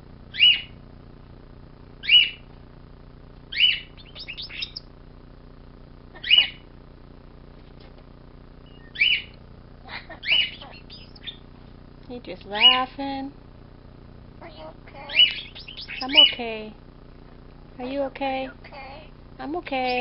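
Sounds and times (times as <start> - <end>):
bird sharp calls: 0.3 - 0.8, 2.0 - 2.5, 3.5 - 4.9, 6.2 - 6.6, 8.6 - 9.4, 10.2 - 11.5, 15.1 - 16.5
bird soft chattering: 3.5 - 4.9, 8.6 - 9.3, 10.2 - 11.5, 15.0 - 16.4.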